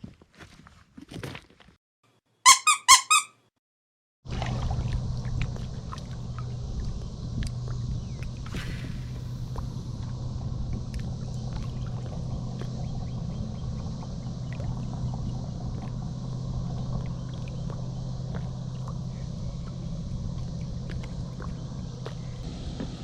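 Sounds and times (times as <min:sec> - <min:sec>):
motor humming: 0:04.6 - 0:23.0.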